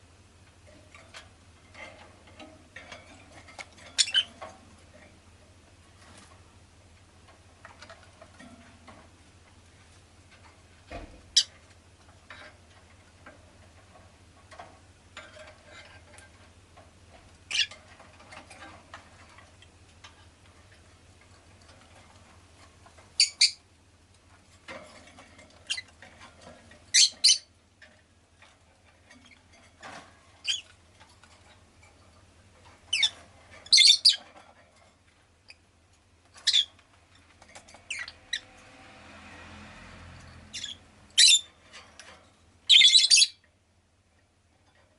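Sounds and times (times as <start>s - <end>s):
faint clicks and scratching: 0.4s - 42.6s, 43.4s - 44.9s
lovebird chirping: 23.2s - 23.6s, 32.9s - 34.2s, 40.5s - 41.5s, 42.7s - 43.4s.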